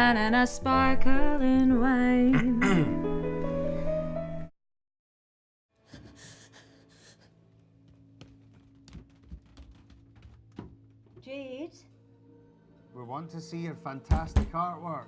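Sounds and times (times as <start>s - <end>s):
person sighing: 2.3s - 3.0s.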